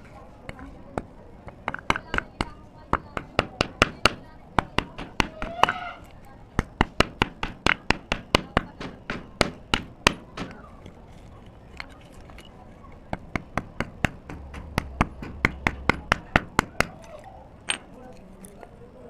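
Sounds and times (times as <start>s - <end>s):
dry clay crunching: 0.0s - 19.0s.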